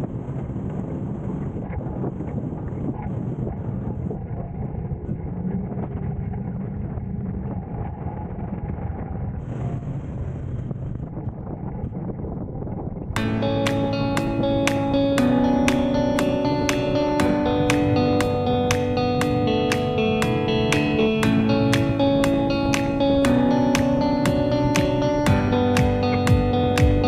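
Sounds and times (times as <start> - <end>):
wind buffeting microphone: 0.0 - 27.0
plucked guitar music: 13.2 - 27.0.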